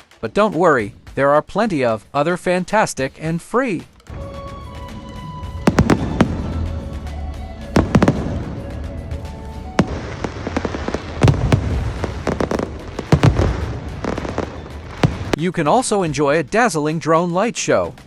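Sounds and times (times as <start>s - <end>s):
fireworks bangs: 4.0s - 15.8s.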